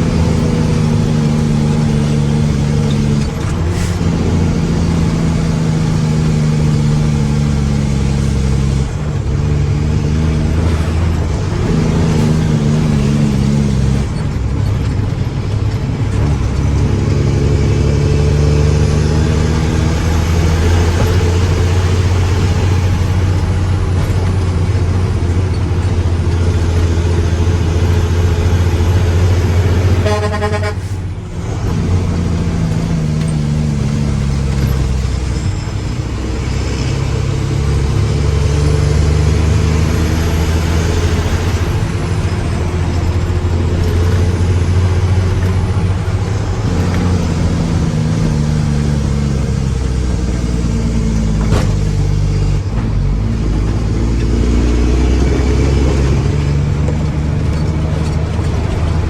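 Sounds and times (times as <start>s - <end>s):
diesel truck engine revving: 0.0s - 59.0s
vehicle horn toot: 29.9s - 31.0s.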